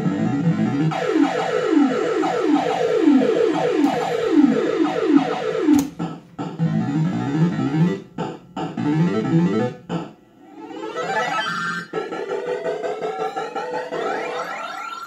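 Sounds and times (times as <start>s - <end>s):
sharp click: 5.7s - 6.1s.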